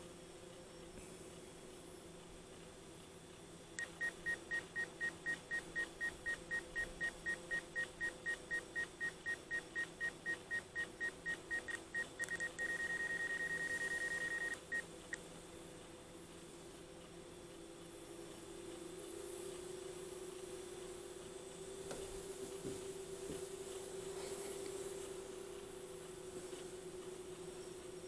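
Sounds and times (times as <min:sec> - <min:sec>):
electronic warning beeper: 0:03.8 - 0:14.8.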